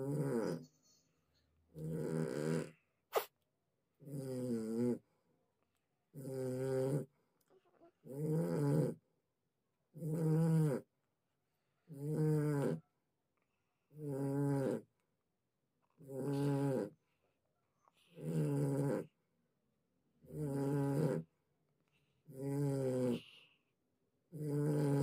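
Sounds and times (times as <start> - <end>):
snoring-like pitched sound: 0.0 - 0.7, 1.7 - 3.3, 4.0 - 5.0, 6.1 - 7.1, 8.0 - 9.0, 10.0 - 10.9, 11.9 - 12.8, 13.9 - 14.9, 16.0 - 17.0, 18.2 - 19.1, 20.2 - 21.3, 22.3 - 23.4, 24.3 - 25.0.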